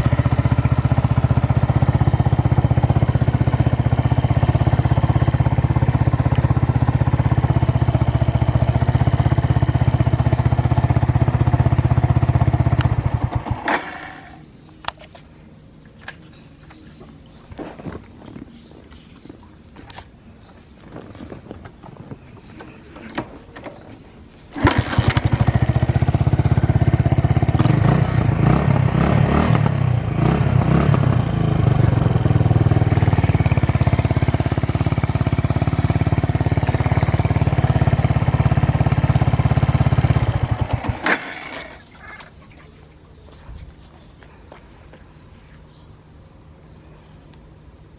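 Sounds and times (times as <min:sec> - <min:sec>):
single-cylinder engine running: 0:00.0 - 0:15.0, 0:21.1 - 0:43.4.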